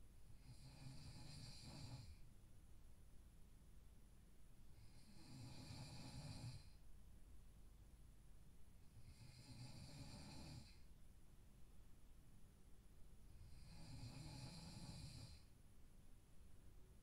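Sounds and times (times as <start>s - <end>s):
person snoring faintly: 0.4s - 2.3s, 4.8s - 6.8s, 8.9s - 10.9s, 13.3s - 15.5s.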